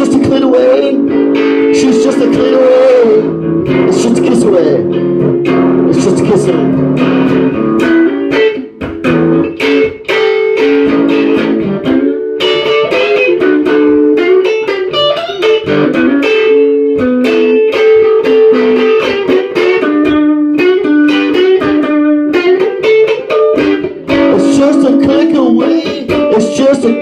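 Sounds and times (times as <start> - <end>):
electric guitar plucked notes: 0.0 - 27.0.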